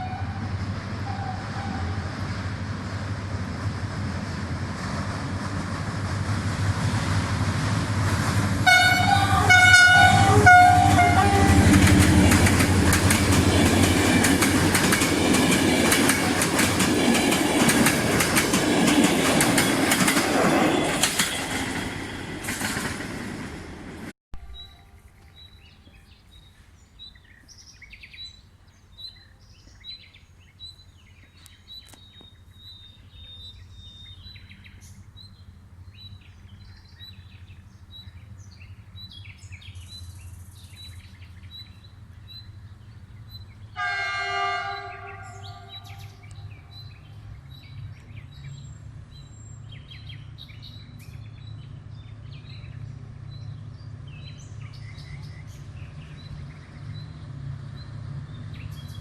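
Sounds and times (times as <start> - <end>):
diesel locomotive horn blast: 0.0 - 2.4, 8.6 - 14.3, 43.7 - 46.4
low train rumble: 0.0 - 59.0
bird chirping: 24.4 - 43.8, 44.7 - 57.2.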